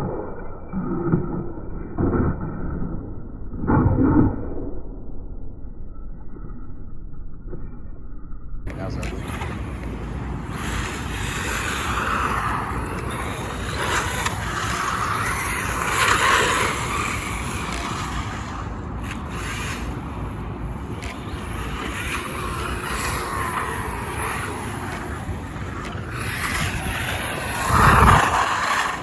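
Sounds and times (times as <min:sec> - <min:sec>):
toy car motor and tyres rushing: 0:09.0 - 0:29.0.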